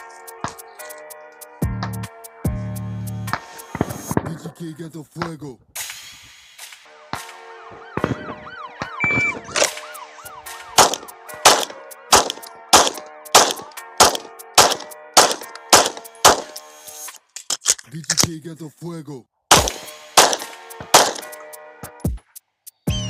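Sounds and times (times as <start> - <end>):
wailing siren-like tone: 6.9 - 10.8
short electronic beep: 9.0 - 9.4
pistol shots: 10.8 - 16.6, 19.5 - 21.3.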